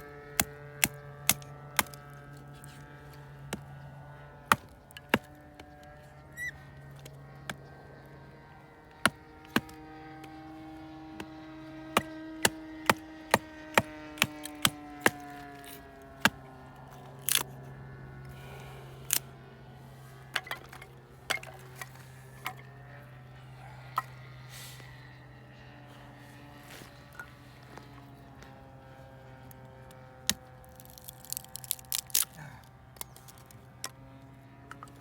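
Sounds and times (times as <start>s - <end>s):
hatchet splitting firewood: 0.2s - 3.8s, 4.4s - 7.7s, 8.9s - 10.5s, 11.1s - 17.6s, 19.9s - 22.8s, 23.6s - 24.8s, 26.0s - 28.5s, 29.9s - 34.0s.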